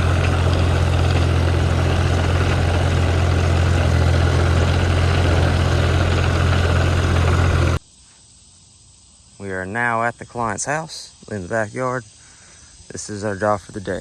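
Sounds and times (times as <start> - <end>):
engine drone: 0.0 - 7.8.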